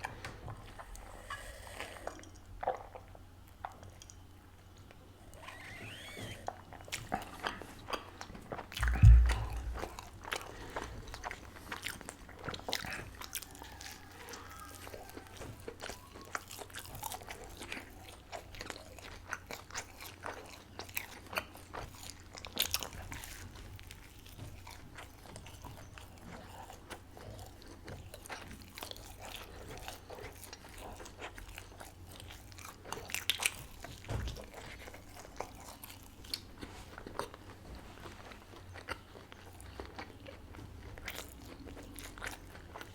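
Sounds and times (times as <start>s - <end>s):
chewing with wet mouth clicks: 0.0s - 42.9s
low thump: 8.8s - 10.0s
crunchy bites: 8.8s - 10.9s.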